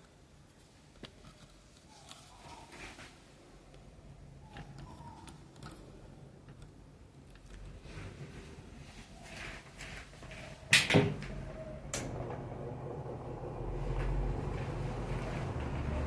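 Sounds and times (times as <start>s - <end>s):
table fan humming: 11.4s - 16.0s
fan switch clicks: 11.9s - 12.4s.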